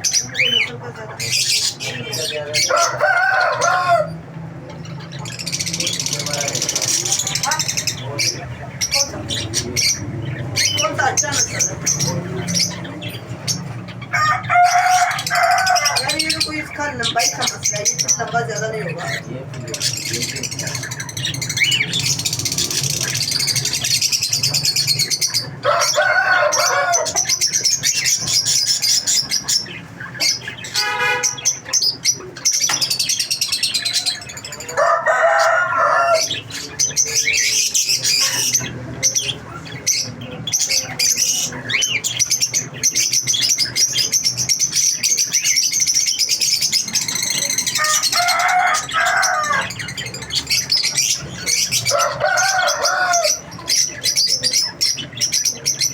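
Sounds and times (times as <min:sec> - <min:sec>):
lovebirds chirping: 0:00.0 - 0:55.9
louder lower bird calls: 0:21.0 - 0:38.6.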